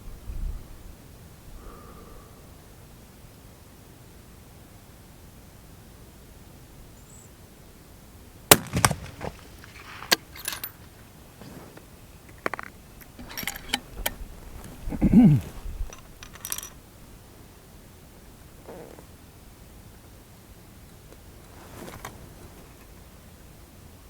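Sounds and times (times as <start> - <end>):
rifle shot crack: 8.5 - 10.3
rifle bolt metallic clicks: 8.5 - 10.8, 13.0 - 14.2.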